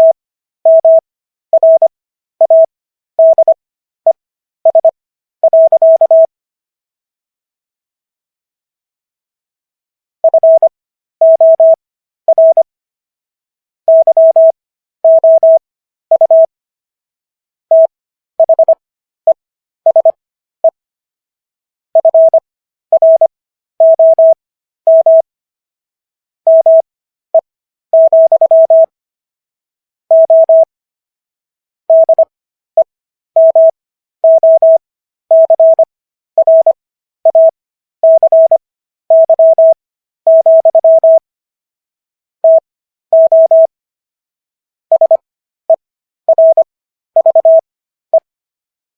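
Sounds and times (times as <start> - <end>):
morse code tone keyed: 1.6 - 1.9, 15.1 - 16.5, 22.0 - 22.4, 23.0 - 25.2, 26.5 - 26.8, 28.0 - 28.9, 30.1 - 30.7, 33.4 - 41.2, 42.4 - 42.6, 43.2 - 43.7, 44.9 - 45.2, 46.3 - 47.6.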